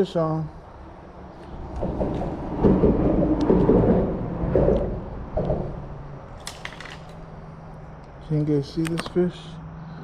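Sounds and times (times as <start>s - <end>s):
sharp clicks: 6.3s - 7.2s, 8.8s - 9.2s.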